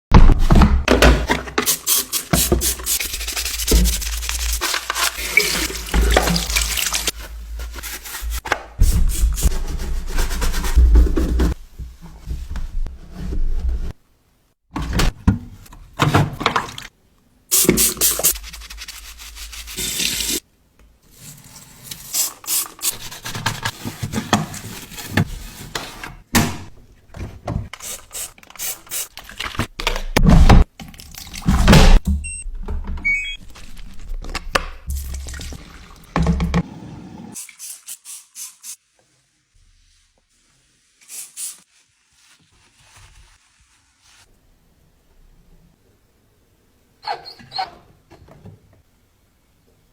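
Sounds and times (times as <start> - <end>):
rubbing and scrubbing strokes: 1.4 - 12.8, 17.6 - 20.4, 37.4 - 44.3
water pouring and dripping: 1.6 - 7.8, 33.4 - 36.7.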